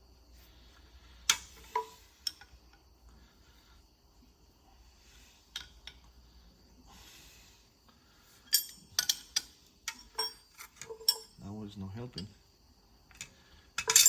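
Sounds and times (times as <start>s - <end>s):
metal tools clinking on fitting: 1.3s - 2.5s, 8.4s - 11.4s, 13.1s - 14.0s.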